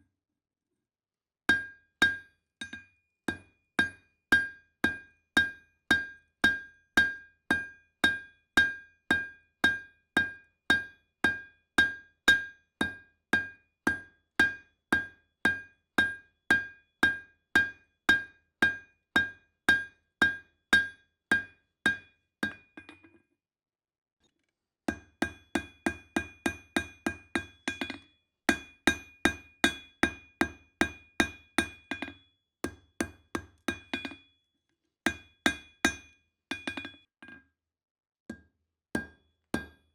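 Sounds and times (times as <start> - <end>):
hammer striking steel on anvil: 35.1 - 37.0.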